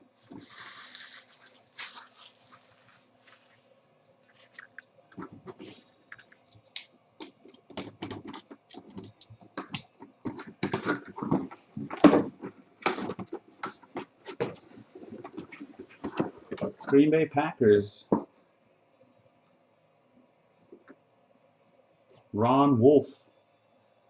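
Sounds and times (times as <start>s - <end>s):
card packaging rustling and clicking: 0.2s - 3.7s, 4.3s - 16.8s.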